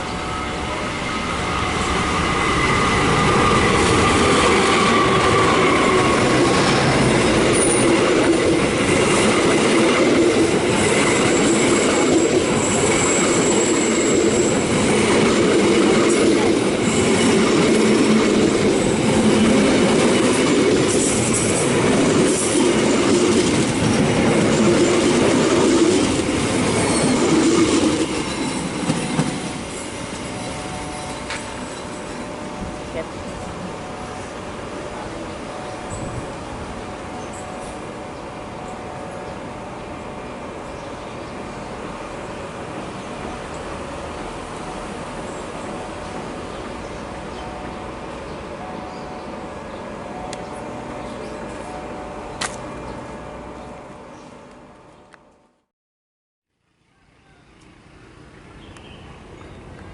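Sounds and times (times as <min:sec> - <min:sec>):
train wheel rumble: 0:00.0 - 0:55.1
high-pitched wheel squeals: 0:10.9 - 0:14.9, 0:26.5 - 0:32.3.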